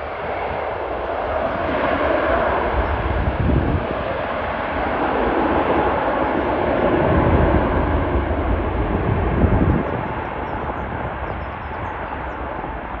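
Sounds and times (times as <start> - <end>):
jet engine rush and rumble: 0.0 - 13.0.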